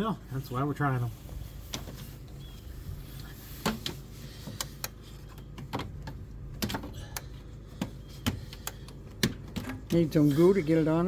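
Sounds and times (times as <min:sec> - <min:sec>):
low steady hum: 0:00.0 - 0:11.0
hand tools clicking and tapping: 0:03.6 - 0:10.0.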